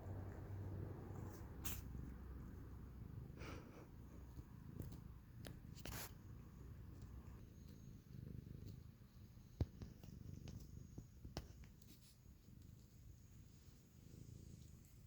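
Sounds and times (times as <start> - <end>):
cat purring: 0.0 - 15.0.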